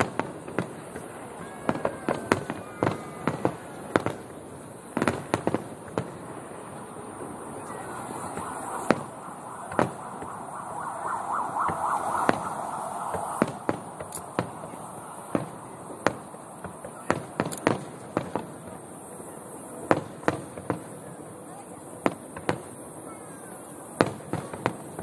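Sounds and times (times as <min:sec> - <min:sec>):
fireworks bangs: 0:00.0 - 0:25.0
wavering whistle: 0:07.6 - 0:13.7.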